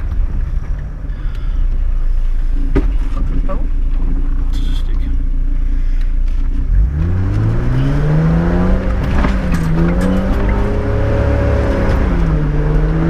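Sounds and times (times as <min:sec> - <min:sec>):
engine revving under load: 0:06.5 - 0:13.0.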